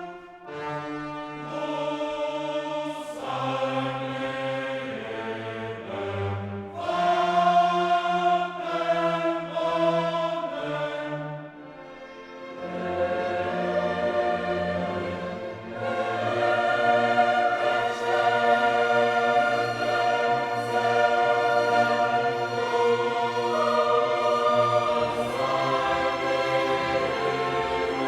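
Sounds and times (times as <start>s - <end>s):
choral and orchestral music: 0.0s - 28.0s.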